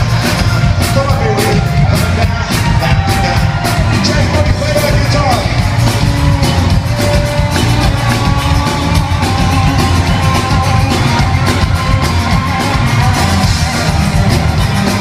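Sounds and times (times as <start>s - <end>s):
live rock band playing: 0.0s - 15.0s.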